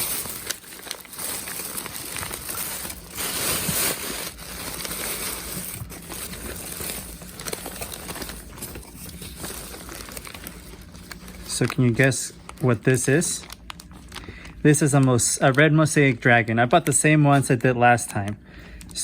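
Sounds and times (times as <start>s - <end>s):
packaging rustling and crinkling: 0.0s - 19.0s.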